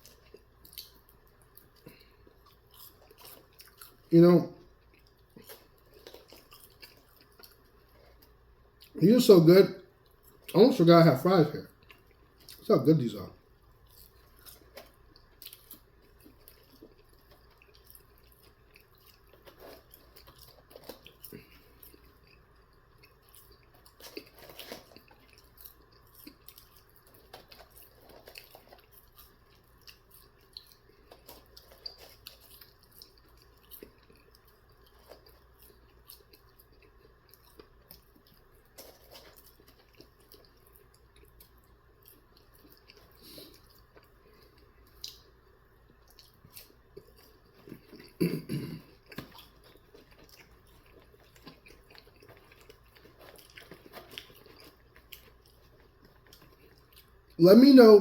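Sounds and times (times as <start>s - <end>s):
person chewing food: 0.0s - 9.0s, 9.8s - 10.8s, 11.6s - 57.4s.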